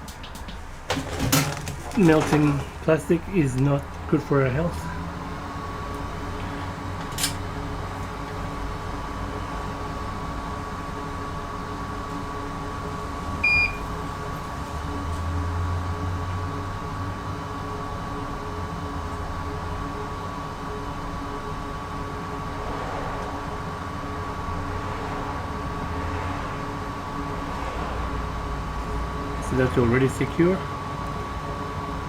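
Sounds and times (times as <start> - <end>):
electric fan motor whine: 0.0 - 32.0
short electronic beep: 13.4 - 13.8.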